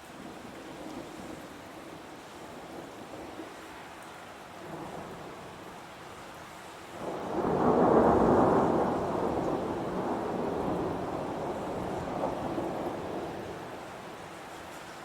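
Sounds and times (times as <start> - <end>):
heavy rain: 0.0 - 15.0
thunder rolling: 7.0 - 13.6.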